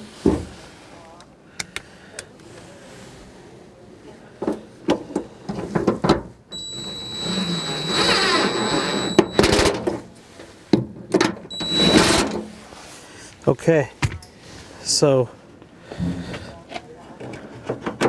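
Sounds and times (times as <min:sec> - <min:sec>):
knocks and clicks of parts handled: 0:01.6 - 0:02.3, 0:14.0 - 0:14.3
small power tool whining: 0:06.5 - 0:09.8, 0:11.5 - 0:12.4.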